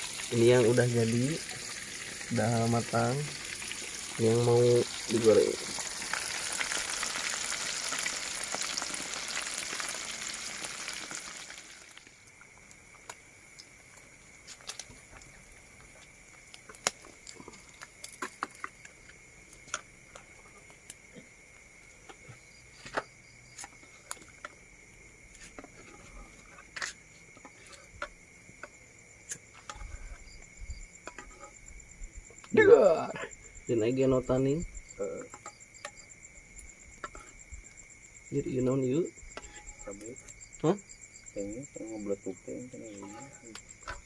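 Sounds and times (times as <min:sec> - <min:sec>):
fish sizzling in hot oil: 0:00.0 - 0:21.0, 0:34.8 - 0:38.4, 0:39.1 - 0:39.9, 0:42.8 - 0:44.0
high-pitched insect trill: 0:00.0 - 0:44.0.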